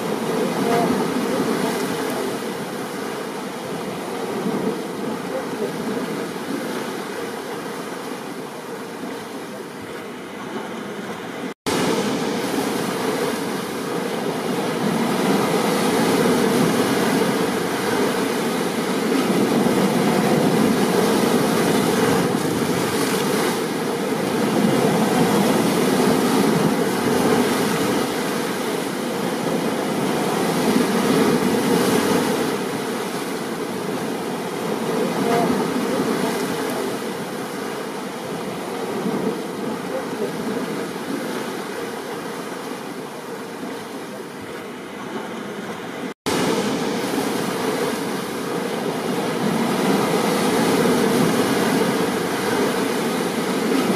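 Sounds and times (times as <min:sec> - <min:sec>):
heavy rain: 0:11.7 - 0:41.3, 0:46.0 - 0:53.9.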